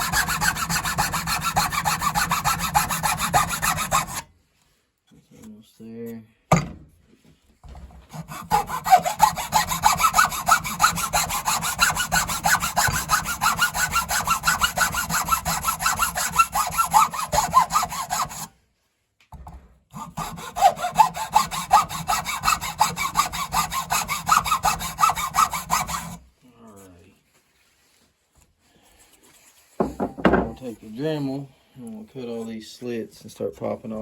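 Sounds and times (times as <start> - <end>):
hand saw cutting wood: 0.0 - 4.3, 8.0 - 18.5, 19.9 - 26.3.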